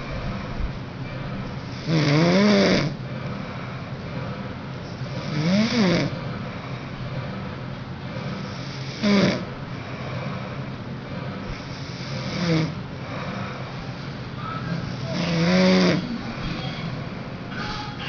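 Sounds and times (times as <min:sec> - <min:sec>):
steady hum: 0:00.0 - 0:18.0
person snoring: 0:01.7 - 0:03.0, 0:05.0 - 0:06.2, 0:08.2 - 0:09.5, 0:11.5 - 0:13.5, 0:14.8 - 0:16.2.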